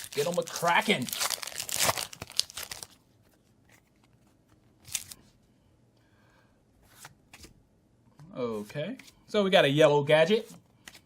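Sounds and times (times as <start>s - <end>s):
foil wrapper crinkling: 0.0s - 3.0s
cards rustling: 0.0s - 5.3s, 10.4s - 11.0s.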